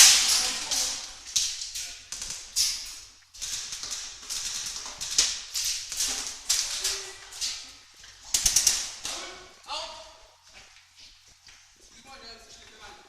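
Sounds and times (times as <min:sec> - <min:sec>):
airsoft guns firing: 0:00.0 - 0:01.1, 0:08.3 - 0:09.2.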